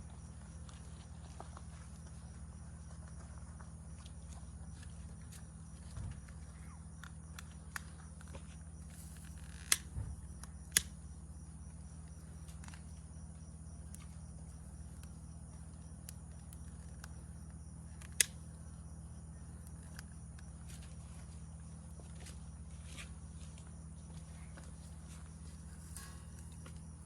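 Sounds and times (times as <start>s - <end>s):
crickets trilling: 0.0s - 27.0s
wood fire crackling: 25.6s - 26.8s.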